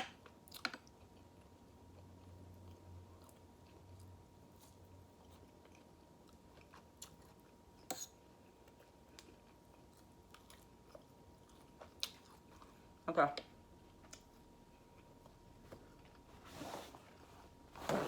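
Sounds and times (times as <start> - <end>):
close chewing with mouth clicks: 0.5 - 7.9.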